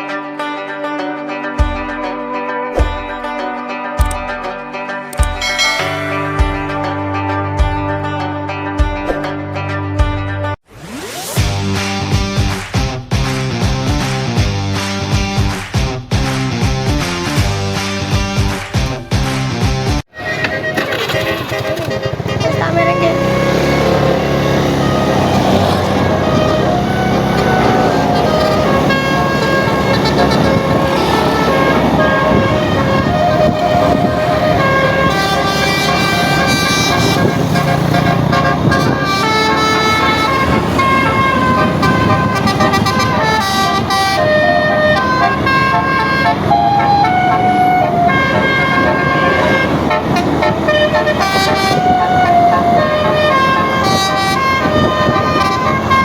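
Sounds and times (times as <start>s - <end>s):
multi-tone bus horn melody: 0.0s - 9.6s, 20.1s - 56.0s.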